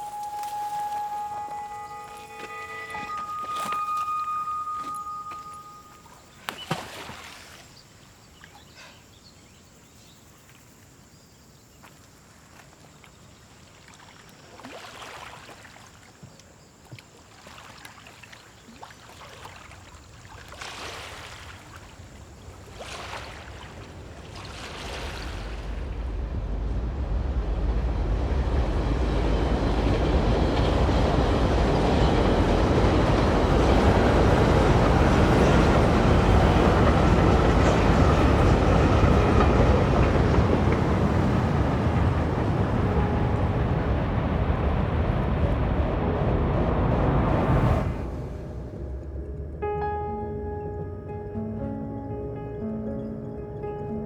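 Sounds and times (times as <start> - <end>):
train rumble: 0.0 - 6.4, 20.0 - 54.0.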